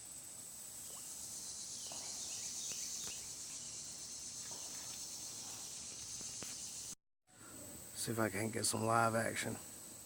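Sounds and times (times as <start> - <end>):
insects trilling buzz: 0.0 - 10.0
faint short insect chirps: 0.1 - 7.0.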